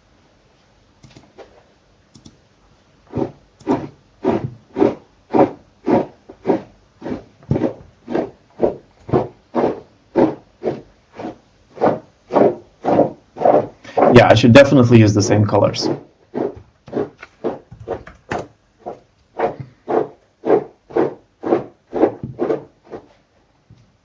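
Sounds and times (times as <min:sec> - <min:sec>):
rhythmic rubbing strokes: 0:03.1 - 0:18.2, 0:18.8 - 0:23.2.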